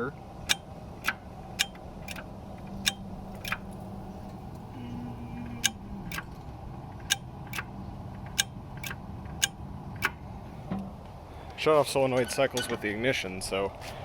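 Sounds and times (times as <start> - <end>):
steady low hum: 0.0 - 14.0
solenoid clicking: 0.5 - 3.8.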